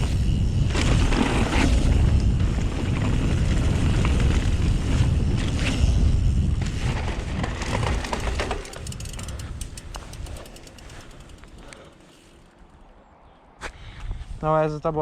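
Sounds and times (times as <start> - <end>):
wind buffeting microphone: 0.0 - 11.8
low tyre rumble: 0.0 - 12.9
bike clicks and rattles: 0.0 - 13.0.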